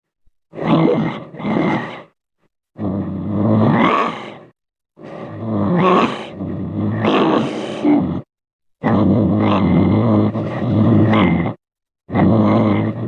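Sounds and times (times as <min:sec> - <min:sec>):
voice-like creature cries: 0:05.7 - 0:06.4, 0:07.0 - 0:08.2.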